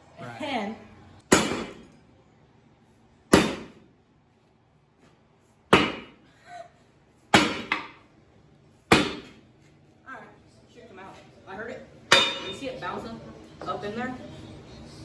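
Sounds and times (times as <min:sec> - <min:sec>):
sharp blows on metal engine parts: 0:01.3 - 0:01.9, 0:03.3 - 0:03.8, 0:05.7 - 0:06.2, 0:07.3 - 0:08.0, 0:08.9 - 0:09.4.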